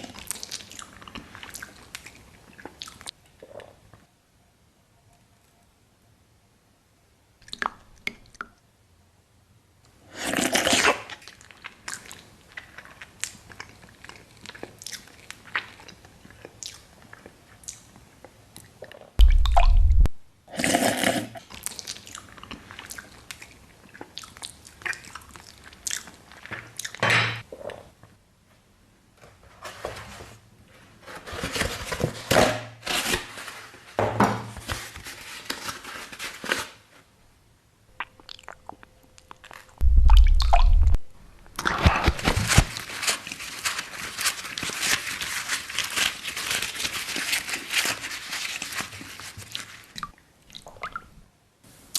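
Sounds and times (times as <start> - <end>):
wet chewing and crunching: 0.0 - 3.7, 10.2 - 27.0, 38.0 - 41.0
heavy low thump: 19.2 - 20.2, 39.8 - 41.1.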